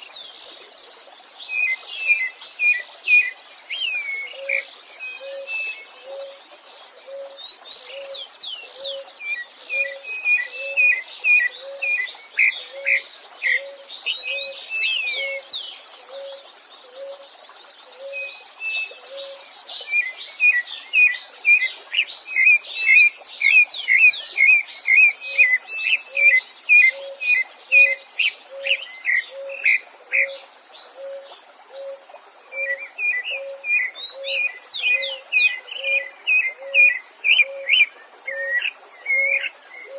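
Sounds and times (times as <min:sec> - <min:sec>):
songbirds singing: 0:00.0 - 0:39.9
dove cooing: 0:04.3 - 0:06.3, 0:07.0 - 0:08.2, 0:09.7 - 0:12.0, 0:12.6 - 0:14.6, 0:16.0 - 0:17.2, 0:17.9 - 0:18.3, 0:26.1 - 0:30.4, 0:31.0 - 0:34.4, 0:35.0 - 0:39.9.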